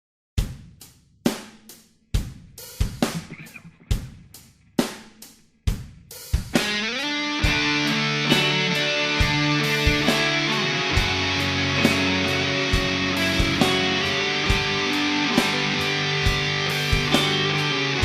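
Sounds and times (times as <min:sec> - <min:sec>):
kick and cymbal hits: 0:00.4 - 0:06.8
distorted electric guitar chords: 0:03.0 - 0:04.2, 0:06.6 - 0:18.0.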